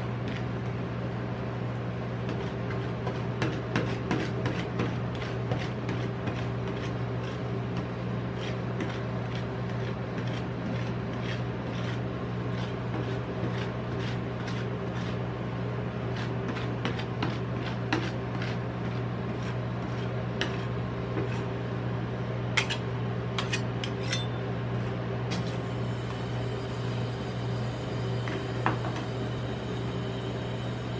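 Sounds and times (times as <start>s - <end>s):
low refrigeration hum: 0.0s - 30.9s
metal spatulas scraping steel plate: 22.6s - 22.8s, 23.4s - 24.4s.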